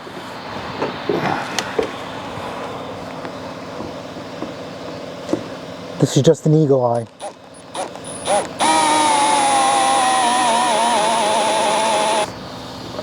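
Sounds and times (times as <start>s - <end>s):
power tool motor whine: 7.2s - 12.4s.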